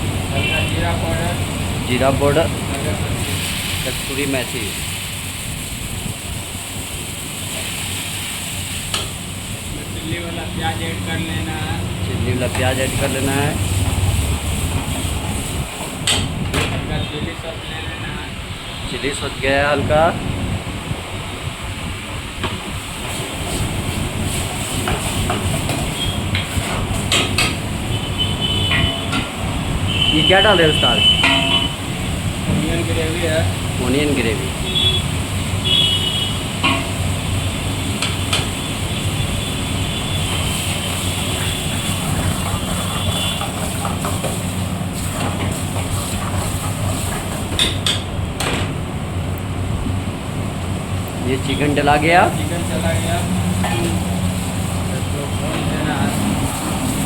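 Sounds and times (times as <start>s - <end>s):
low rumble of kitchen noise: 22.8s - 57.0s
metal ladle clinking on pot: 31.2s - 31.7s, 36.6s - 37.0s.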